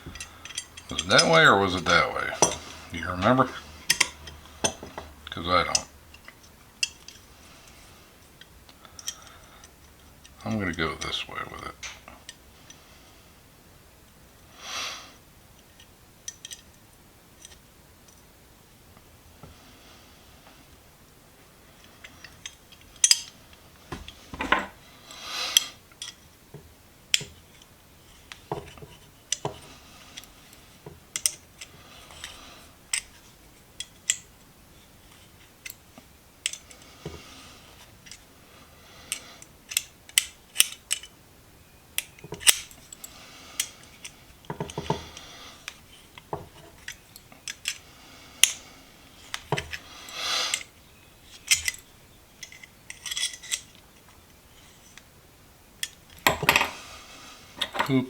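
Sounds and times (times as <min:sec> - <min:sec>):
metal pliers clicking and clinking: 0:00.0 - 0:07.2, 0:08.9 - 0:09.8, 0:22.0 - 0:23.4, 0:28.3 - 0:30.3, 0:31.1 - 0:33.2, 0:36.4 - 0:36.8, 0:39.1 - 0:41.1, 0:42.0 - 0:47.8, 0:48.4 - 0:48.6, 0:51.3 - 0:53.8, 0:55.8 - 0:56.8, 0:57.6 - 0:58.0.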